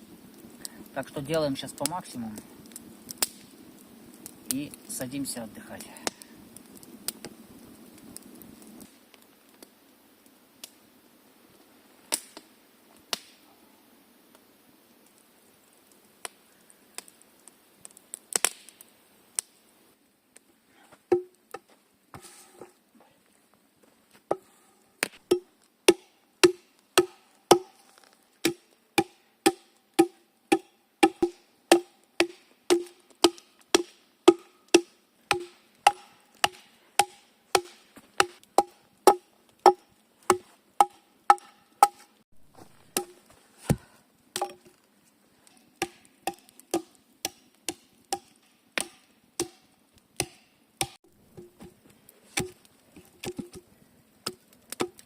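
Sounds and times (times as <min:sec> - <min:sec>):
axe chopping wood: 0:25.0 - 0:27.8, 0:28.4 - 0:42.0, 0:42.9 - 0:43.8, 0:45.8 - 0:49.6, 0:50.2 - 0:51.8, 0:54.2 - 0:55.0.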